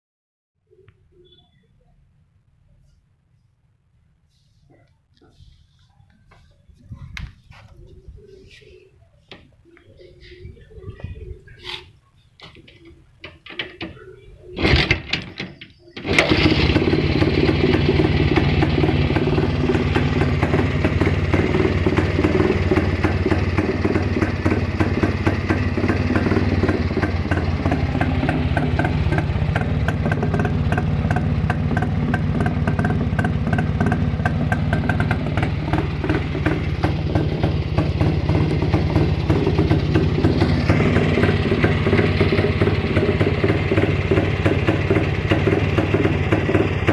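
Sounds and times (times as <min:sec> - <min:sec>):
motorcycle engine starting and running: 0:14.6 - 0:46.9.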